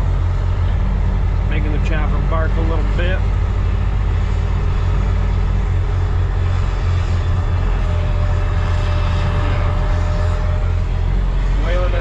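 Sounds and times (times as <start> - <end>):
diesel truck engine droning: 0.0 - 12.0
faint thin whine: 0.0 - 12.0.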